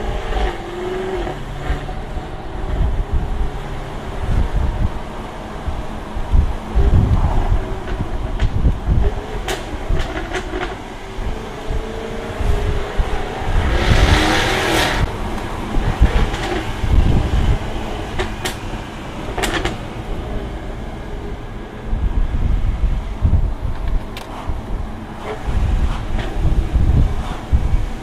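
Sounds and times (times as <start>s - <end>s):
car engine deep rumble: 0.0s - 28.0s
exhaust crackles and pops: 5.8s - 20.5s, 21.4s - 28.0s.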